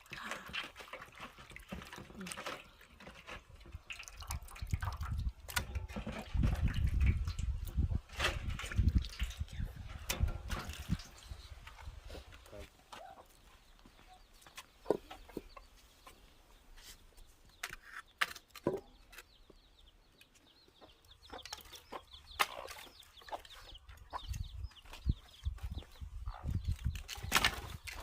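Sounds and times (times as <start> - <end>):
chickens clucking: 5.6 - 16.9, 19.8 - 28.0.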